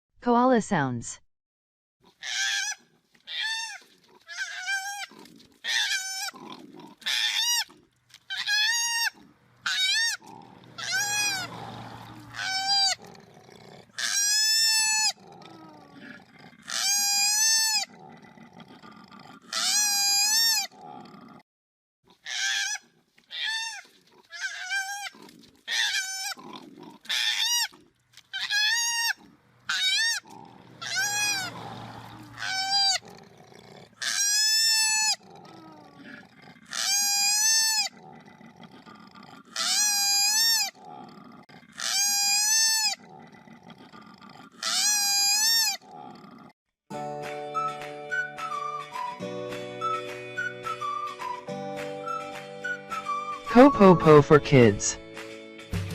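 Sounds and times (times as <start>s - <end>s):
koala squealing: 2.2s - 6.4s, 7.0s - 7.7s, 8.3s - 13.1s, 14.0s - 16.0s, 16.6s - 17.9s, 19.5s - 20.7s, 22.2s - 38.0s, 38.8s - 40.8s, 41.8s - 43.0s, 44.6s - 45.9s.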